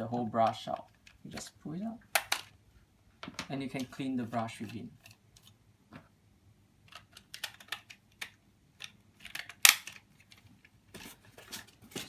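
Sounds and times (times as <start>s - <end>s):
plastic clicks and clacks: 2.2s - 2.5s, 6.9s - 10.4s.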